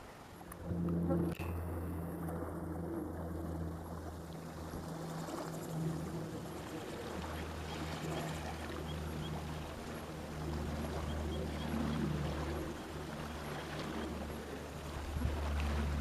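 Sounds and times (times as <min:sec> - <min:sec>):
steady low drone: 0:00.2 - 0:16.0.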